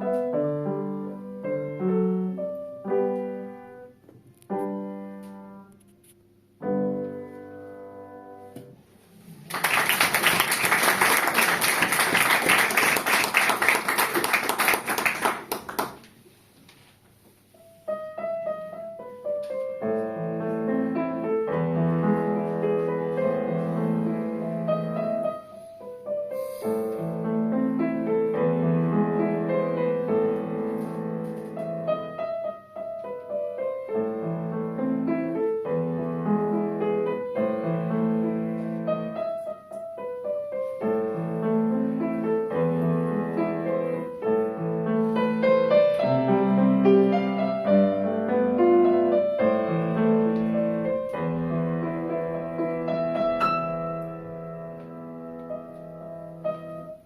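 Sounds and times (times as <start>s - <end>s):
acoustic piano notes: 0.0s - 57.0s
audience applauding: 9.4s - 16.2s.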